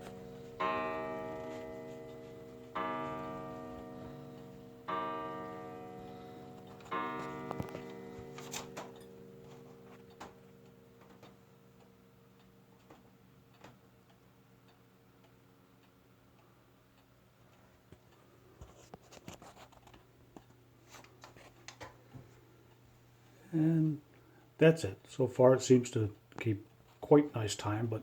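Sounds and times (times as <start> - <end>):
wall clock ticking: 0.0 - 18.9.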